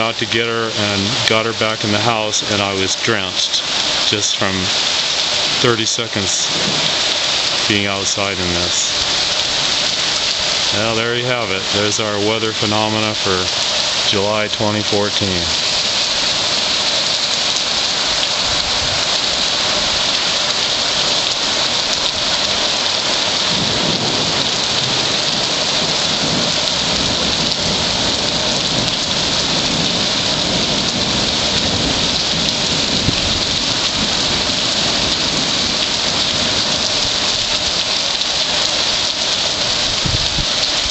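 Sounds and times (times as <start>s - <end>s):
heavy rain pouring: 0.0s - 40.9s
low rumble of thunder: 6.4s - 7.7s, 23.3s - 37.4s, 39.7s - 40.9s.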